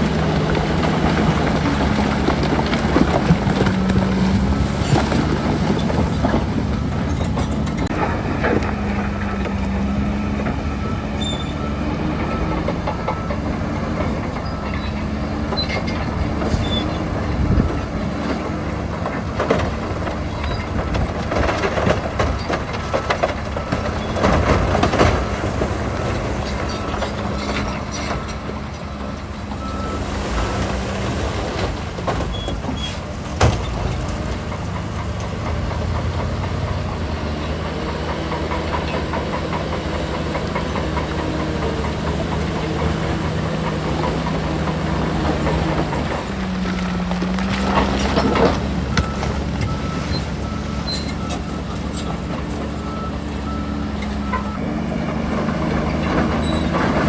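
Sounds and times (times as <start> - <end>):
metallic clanking of tracks: 0.0 - 29.6, 31.5 - 57.0
heavy diesel machinery engine: 0.0 - 57.0.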